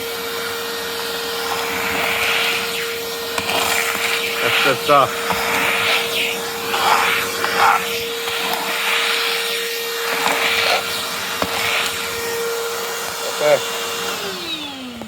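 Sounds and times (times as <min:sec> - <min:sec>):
vacuum picking up grit: 0:00.0 - 0:15.0
wet dry vacuum running: 0:00.0 - 0:15.0.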